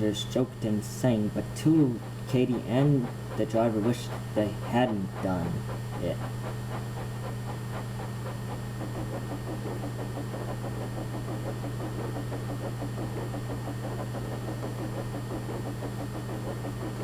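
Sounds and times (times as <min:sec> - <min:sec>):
train running with clicking: 0:00.0 - 0:17.0.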